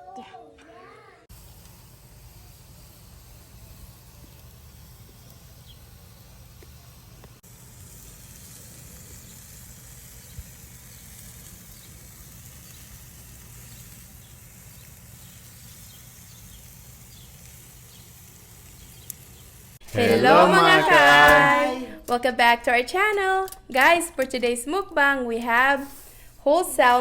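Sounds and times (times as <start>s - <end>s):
fish sizzling on a grill: 1.3s - 19.8s, 25.8s - 26.4s
small crackles: 1.3s - 19.8s.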